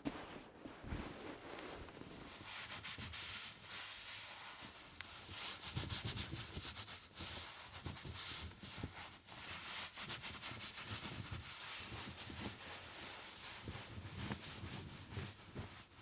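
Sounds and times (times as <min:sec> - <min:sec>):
fabric rustling: 0:00.0 - 0:06.6.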